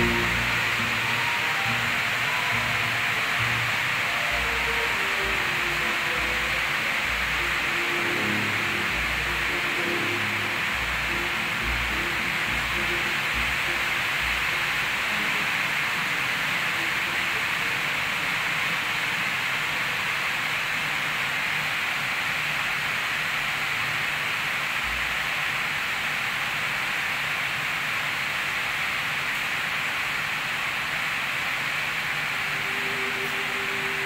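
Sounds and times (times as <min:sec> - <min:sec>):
steady hiss: 0:00.0 - 0:34.0.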